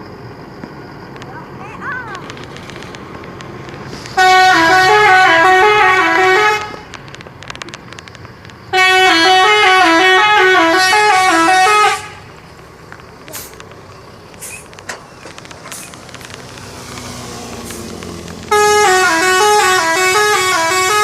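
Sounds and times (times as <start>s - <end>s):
musical vehicle horn melody: 4.1s - 6.9s, 8.7s - 12.3s, 18.4s - 21.0s.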